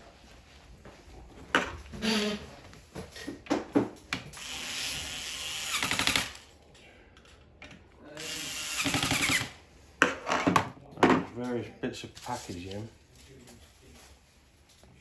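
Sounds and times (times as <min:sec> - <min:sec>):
power screwdriver running: 0:04.4 - 0:06.4, 0:08.2 - 0:09.5.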